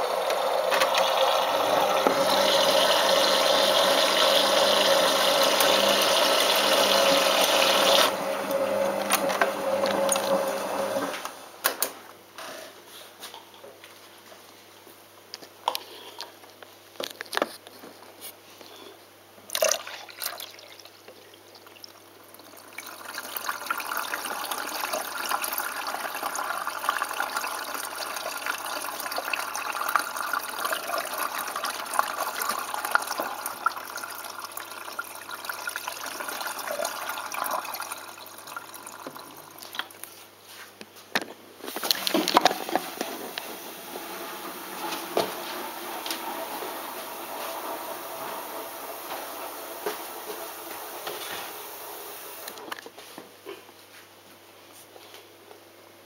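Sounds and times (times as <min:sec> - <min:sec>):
water rushing into drum: 0:00.0 - 0:11.3, 0:41.7 - 0:52.6.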